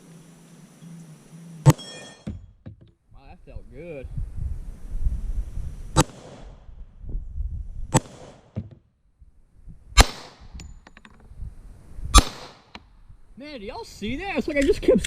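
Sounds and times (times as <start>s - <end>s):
pistol shots: 6.0s - 6.5s, 8.0s - 8.6s, 10.0s - 10.4s, 12.2s - 12.7s.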